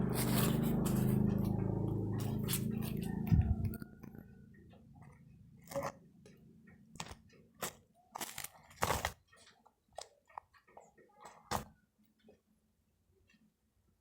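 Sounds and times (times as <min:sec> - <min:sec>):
person chewing crunchy snacks: 0:00.0 - 0:04.1, 0:05.6 - 0:06.0, 0:07.0 - 0:10.6.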